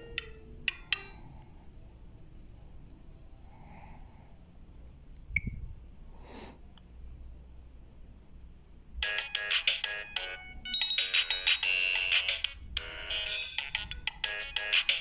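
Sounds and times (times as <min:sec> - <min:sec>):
electronic ringtone melody: 0:09.0 - 0:15.0.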